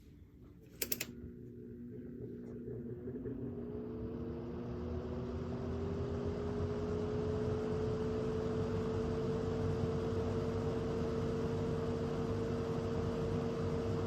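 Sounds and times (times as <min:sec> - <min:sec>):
fan motor hum spinning up: 0:00.6 - 0:14.0
fan switch clicks: 0:00.7 - 0:01.2.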